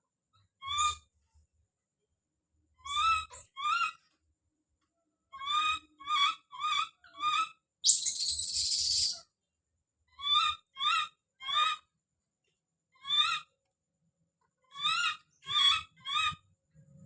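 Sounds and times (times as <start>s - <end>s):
baby monkey harsh scream: 5.4s - 9.2s, 13.0s - 13.5s
baby monkey crying: 5.5s - 9.2s.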